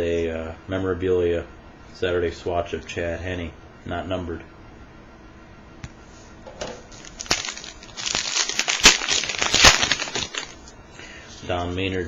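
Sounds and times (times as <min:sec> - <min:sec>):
wrapper tearing and crinkling: 0:06.9 - 0:10.6.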